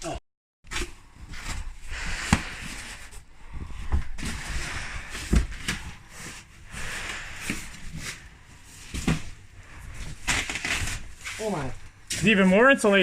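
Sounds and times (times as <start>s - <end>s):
rustling and scraping: 0.7s - 13.0s.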